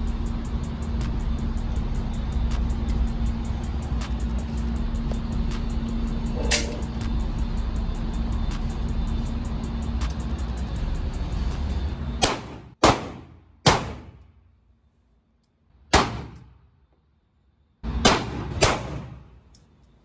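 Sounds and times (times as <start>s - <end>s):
steady background sound: 0.0s - 18.5s
pistol shots: 12.2s - 14.2s, 15.9s - 16.5s, 18.0s - 19.3s.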